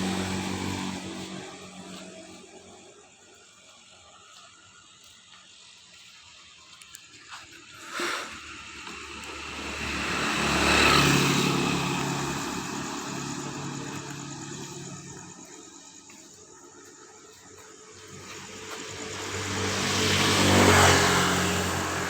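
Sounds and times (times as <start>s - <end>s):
vehicle driving past: 0.0s - 3.6s, 7.9s - 16.6s, 17.5s - 22.0s.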